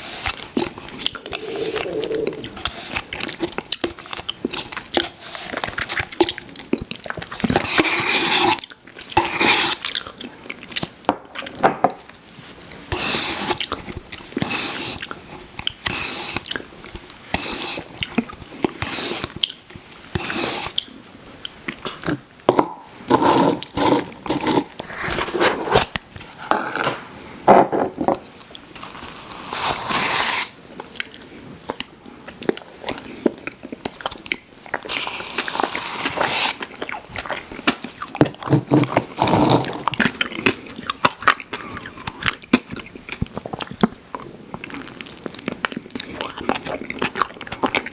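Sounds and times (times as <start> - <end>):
person chewing ice cream: 0.0 - 11.5, 28.4 - 47.9.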